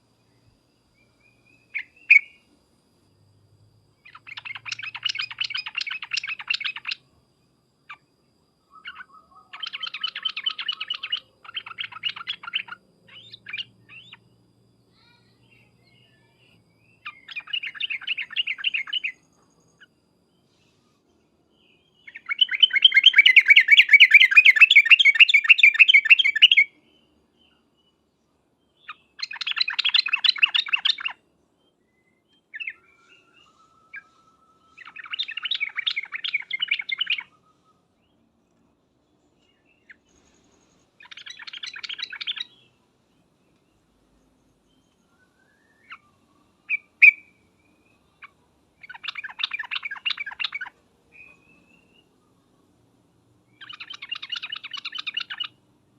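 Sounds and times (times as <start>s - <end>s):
bulbul chattering calls: 1.7s - 2.4s, 4.0s - 7.0s, 8.7s - 14.2s, 17.0s - 19.2s, 22.0s - 26.7s, 28.8s - 31.2s, 34.7s - 37.6s, 41.0s - 42.8s, 45.8s - 52.2s, 53.5s - 55.6s.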